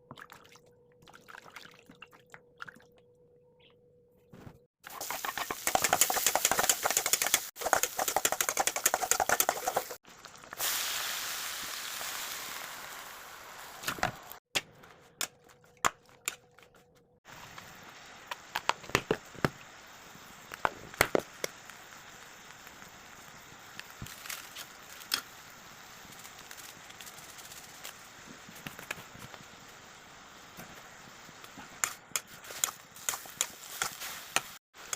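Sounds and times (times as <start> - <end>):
dense cooking crackling: 4.3 - 34.9
steady hiss: 4.8 - 14.4, 17.3 - 34.9.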